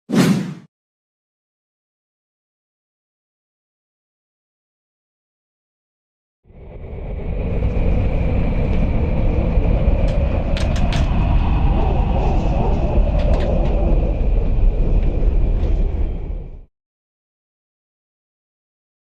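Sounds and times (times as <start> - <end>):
low vehicle rumble: 6.5 - 16.7.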